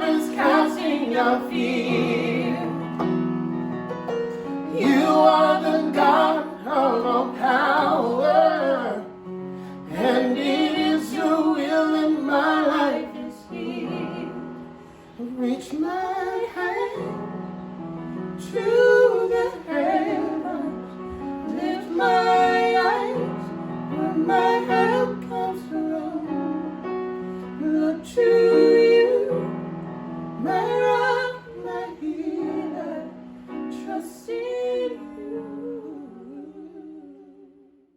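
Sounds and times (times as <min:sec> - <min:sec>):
instrumental accompaniment: 0:00.0 - 0:15.2.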